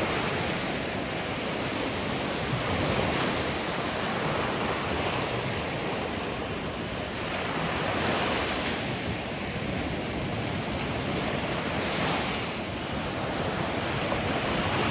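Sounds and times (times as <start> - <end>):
sea waves washing in: 0.0 - 14.9.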